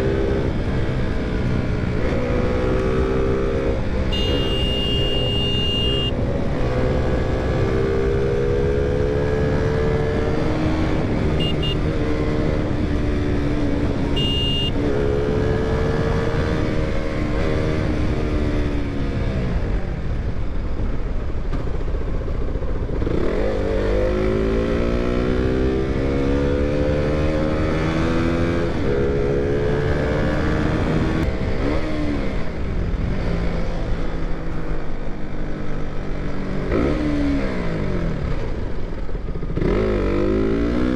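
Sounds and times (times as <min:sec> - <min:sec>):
short high beeps: 0:04.1 - 0:06.2, 0:11.4 - 0:11.9, 0:14.2 - 0:14.8.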